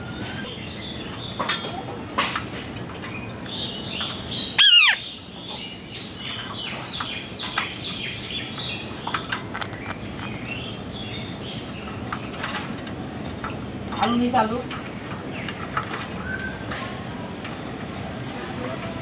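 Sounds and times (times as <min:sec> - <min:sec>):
parrot chirps: 0:04.5 - 0:05.1
parrot screeching: 0:04.6 - 0:05.1.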